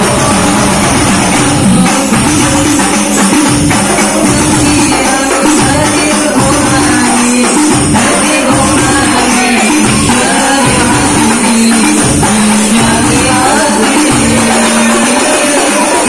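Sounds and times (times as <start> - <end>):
devotional singing: 0.0 - 16.0
frame drums with jingles: 0.0 - 16.0.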